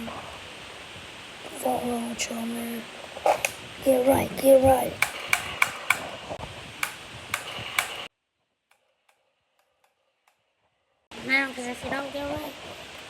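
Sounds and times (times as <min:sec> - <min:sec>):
pistol clicks: 0:05.0 - 0:06.1, 0:06.8 - 0:08.0.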